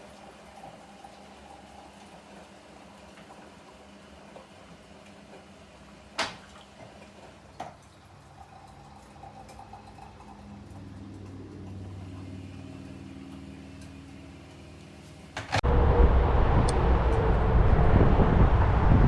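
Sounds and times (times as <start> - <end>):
vehicle engine humming: 10.3 - 19.0.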